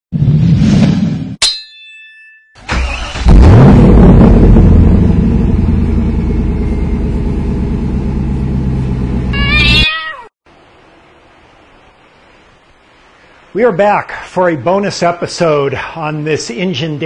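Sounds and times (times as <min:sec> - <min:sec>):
car engine revving: 0:02.7 - 0:09.3
cat meowing: 0:09.3 - 0:10.3.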